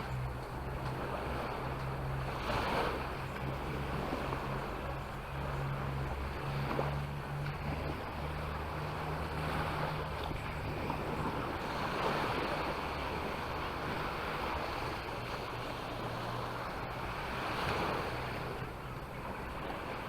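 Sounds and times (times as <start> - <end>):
sea waves washing onto beach: 0.0 - 20.0
wind rumbling on microphone: 0.0 - 20.0.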